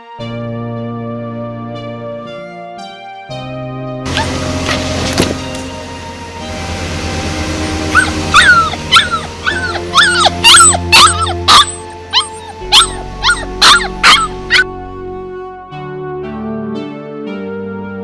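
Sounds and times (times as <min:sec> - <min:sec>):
background music: 0:00.0 - 0:18.0
puppy yelping and whimpering: 0:07.9 - 0:14.7.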